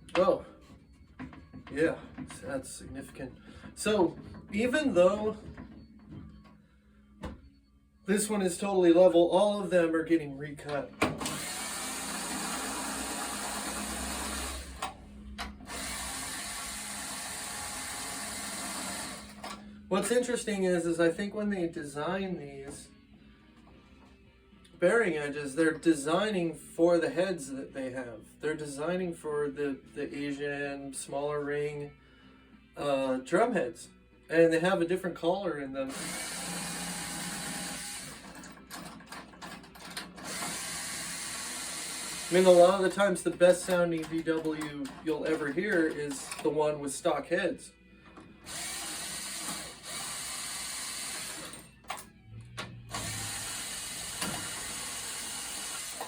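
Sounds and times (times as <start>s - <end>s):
power tool running: 11.2s - 19.6s, 35.9s - 38.4s, 40.2s - 42.9s, 48.4s - 51.7s, 52.9s - 56.0s.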